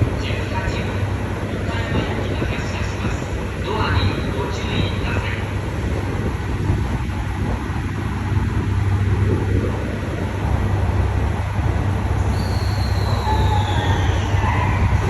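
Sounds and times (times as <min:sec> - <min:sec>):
diesel train engine rumble: 0:00.0 - 0:15.0
high wheel squeal: 0:12.2 - 0:15.0.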